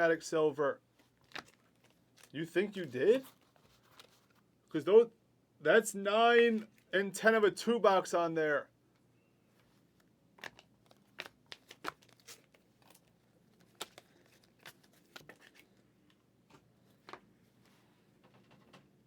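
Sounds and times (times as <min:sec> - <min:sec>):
trading cards clicking and rustling: 0:10.4 - 0:15.8.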